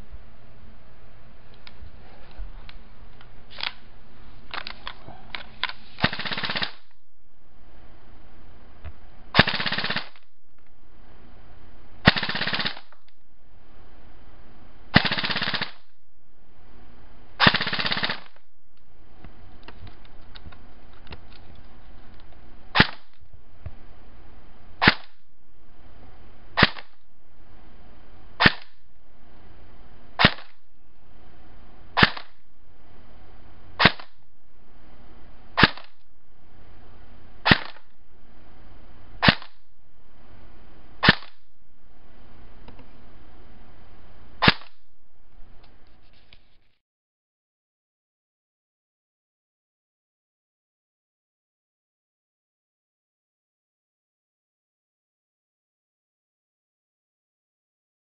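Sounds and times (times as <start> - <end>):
airsoft gun single shots: 6.0 - 6.9, 9.4 - 10.2, 12.0 - 12.9, 14.9 - 15.9, 17.4 - 18.4, 22.7 - 23.2, 24.8 - 25.2, 26.6 - 27.0, 28.4 - 28.8, 30.2 - 30.6, 32.0 - 32.4, 33.8 - 34.2, 35.6 - 36.0, 37.4 - 37.9, 39.2 - 39.6, 41.0 - 41.5, 44.4 - 44.8
airsoft gun full-auto bursts: 6.0 - 7.0, 9.4 - 10.2, 12.0 - 13.0, 14.9 - 15.9, 17.4 - 18.4, 22.7 - 23.2, 24.8 - 25.2, 26.6 - 27.0, 28.4 - 28.8, 30.2 - 30.6, 32.0 - 32.4, 33.8 - 34.2, 35.6 - 36.0, 37.4 - 37.9, 39.2 - 39.6, 41.0 - 41.4, 44.4 - 44.8.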